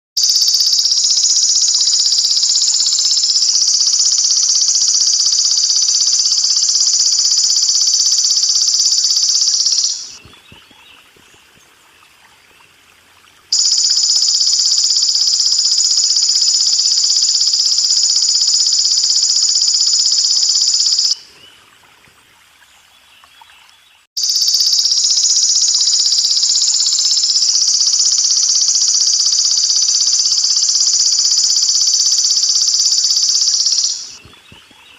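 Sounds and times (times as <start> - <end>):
grasshopper buzzing trill: 0.2 - 10.2, 13.5 - 21.2, 24.2 - 34.2
faint water hiss: 6.8 - 15.3, 20.2 - 24.1.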